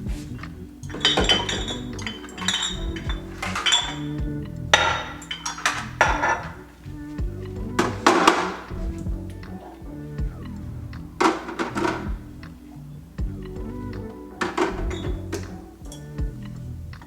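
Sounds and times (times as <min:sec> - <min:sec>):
background music with bass: 0:00.0 - 0:17.0
jars and containers clinking: 0:00.8 - 0:06.7, 0:07.6 - 0:08.9, 0:11.2 - 0:12.2, 0:14.4 - 0:16.2.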